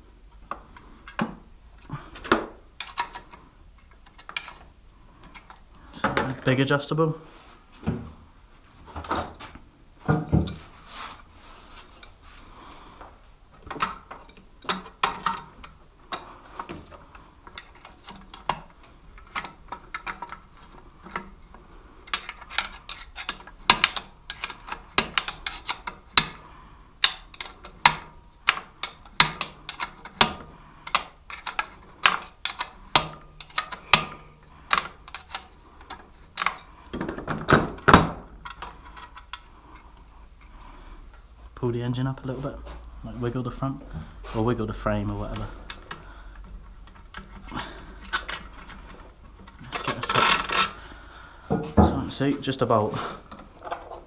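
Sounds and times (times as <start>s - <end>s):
spanner clicking on metal bolt: 22.1s - 26.4s.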